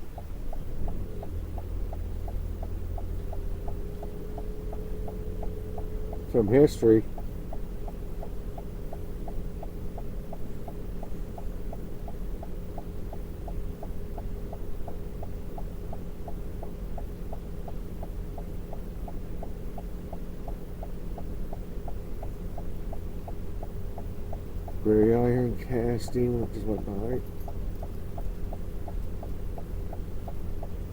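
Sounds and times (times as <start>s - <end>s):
car engine and road rumble: 0.0s - 30.9s
constant hum: 0.0s - 30.9s
light regular ticking: 0.0s - 30.9s.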